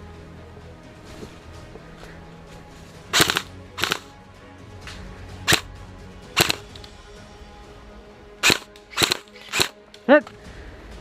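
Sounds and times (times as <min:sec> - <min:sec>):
airsoft guns firing: 0:03.1 - 0:04.1, 0:05.5 - 0:05.7, 0:06.4 - 0:06.8, 0:08.4 - 0:09.8.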